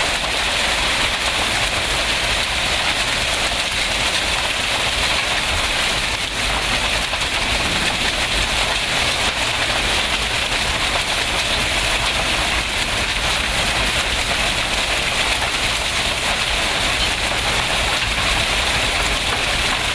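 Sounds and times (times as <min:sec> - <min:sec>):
heavy rain pouring: 0:00.0 - 0:19.9
low rumble: 0:07.0 - 0:09.6.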